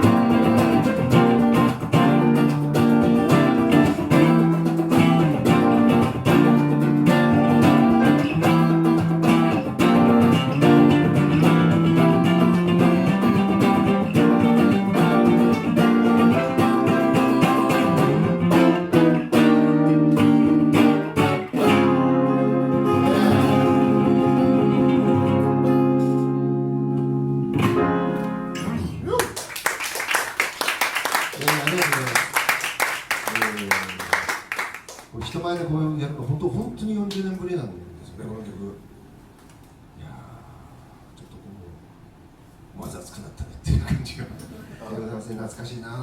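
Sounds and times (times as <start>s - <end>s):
guitars strumming chords: 0.0s - 29.0s.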